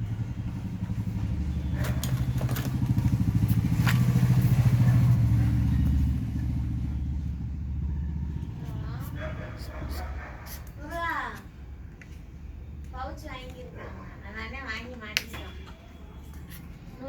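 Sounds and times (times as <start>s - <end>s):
engine chugging: 0.0s - 11.3s.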